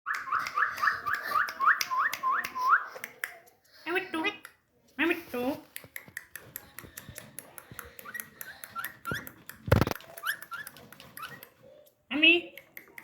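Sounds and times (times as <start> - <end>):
parrot clicking: 5.7 - 11.6, 12.5 - 13.0
parrot squeaking: 8.0 - 11.6.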